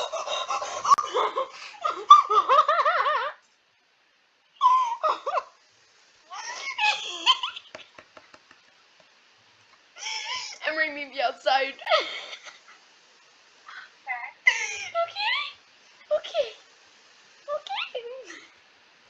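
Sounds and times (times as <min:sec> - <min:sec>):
person giggling: 0:00.0 - 0:03.4, 0:04.6 - 0:05.5, 0:06.3 - 0:08.3.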